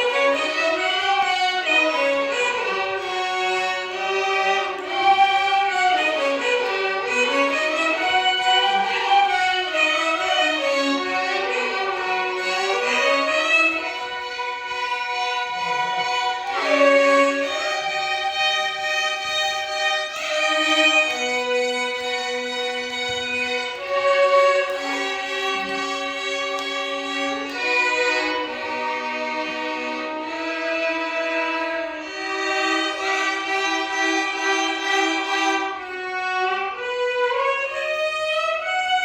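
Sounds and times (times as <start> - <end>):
violin ensemble melody: 0.0 - 39.0.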